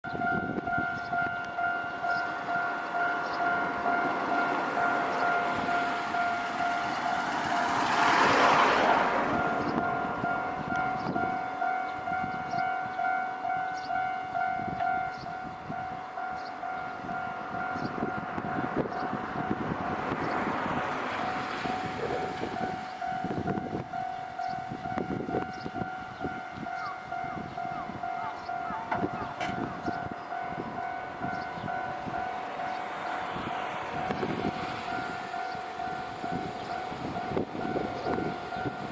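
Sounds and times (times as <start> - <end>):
train passing: 0.1 - 38.9
level crossing bell ringing: 22.5 - 32.8.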